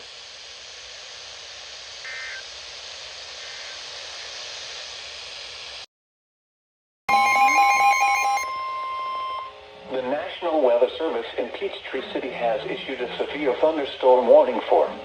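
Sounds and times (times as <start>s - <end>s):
radio static hiss: 0.0s - 5.9s, 9.7s - 15.0s
rapid buzzing data bursts: 0.0s - 5.9s
short beep: 7.1s - 9.6s
steady alert tone: 7.1s - 10.2s.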